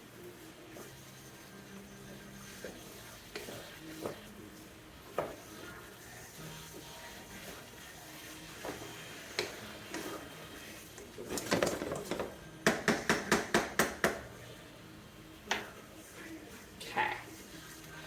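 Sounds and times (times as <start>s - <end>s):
vegetables simmering: 0.0s - 18.0s
spoon stirring and scraping pot: 0.4s - 14.5s
spoon knocking on pot rim: 12.6s - 14.3s.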